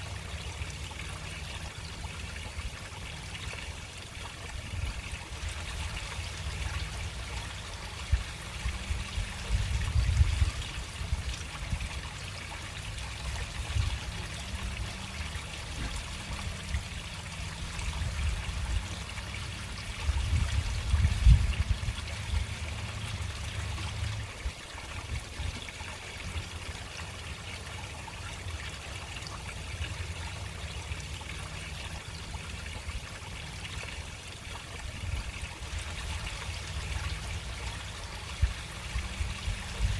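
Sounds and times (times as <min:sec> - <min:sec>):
water trickling through a drain: 0:00.0 - 0:39.9.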